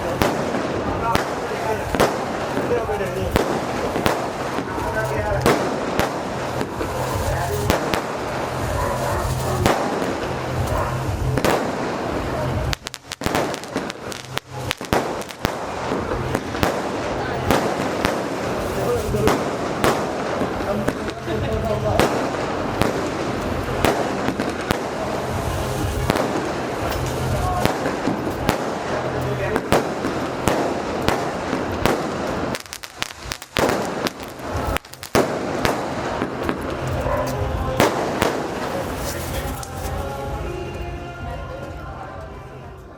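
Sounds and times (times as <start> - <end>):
firecracker cracks and pops: 0.0 - 40.4
fireworks crackling hiss: 0.0 - 41.0.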